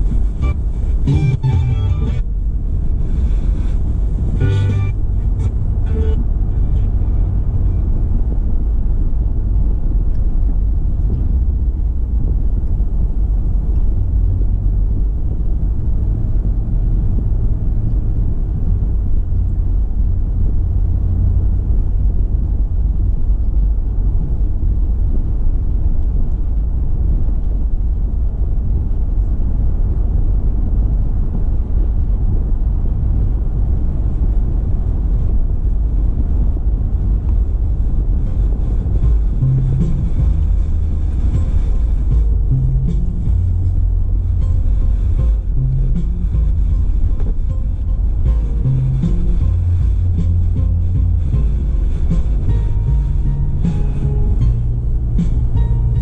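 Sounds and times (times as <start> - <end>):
car tyre and wind noise: 0.0 - 56.0.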